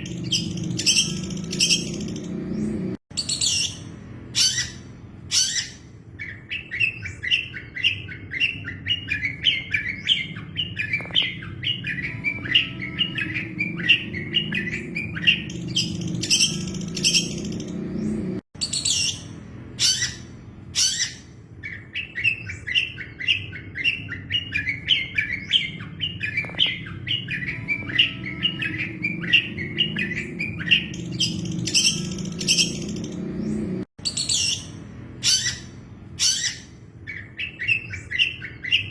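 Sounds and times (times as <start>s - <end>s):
bird chattering song: 0.0s - 38.9s
sharp high bird calls: 0.0s - 38.9s.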